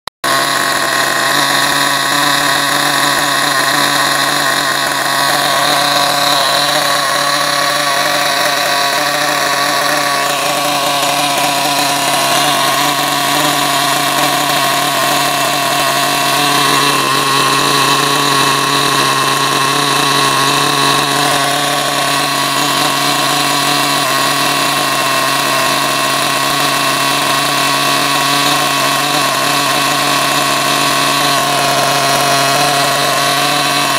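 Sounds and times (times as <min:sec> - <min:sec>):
small nitro engine idling: 0:00.2 - 0:33.9.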